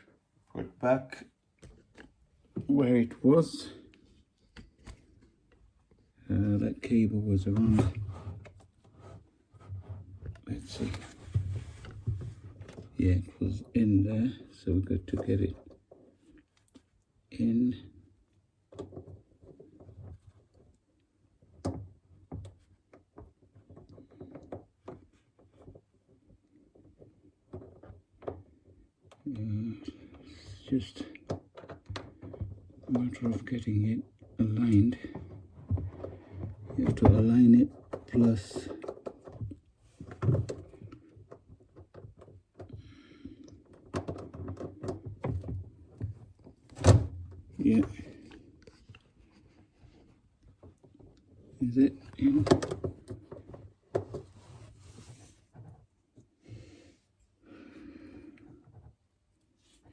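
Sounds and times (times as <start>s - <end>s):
light clicks taps and knocks: 18.6s - 54.4s.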